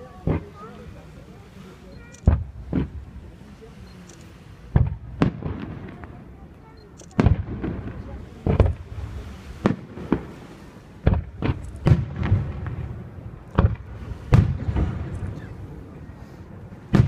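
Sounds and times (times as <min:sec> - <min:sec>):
low rumbling echo: 0:07.2 - 0:17.0
firework shells bursting: 0:09.6 - 0:15.4.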